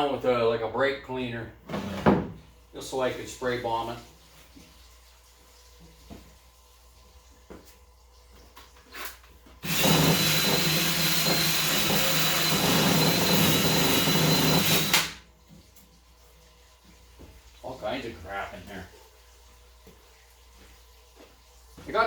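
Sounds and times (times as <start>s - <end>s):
power drill whining: 9.6s - 15.2s.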